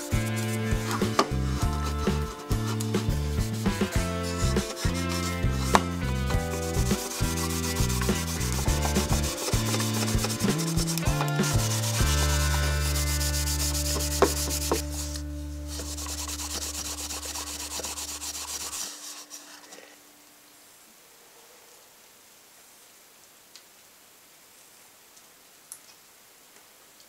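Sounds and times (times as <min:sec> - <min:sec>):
background music with bass line: 0:00.0 - 0:18.1
sanding hiss: 0:00.0 - 0:19.9.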